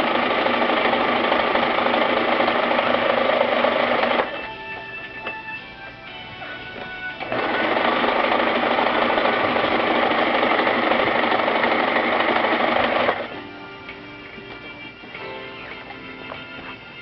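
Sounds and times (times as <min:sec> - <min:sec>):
sewing machine running: 0:00.0 - 0:04.6, 0:06.6 - 0:13.4
background music: 0:00.0 - 0:17.0.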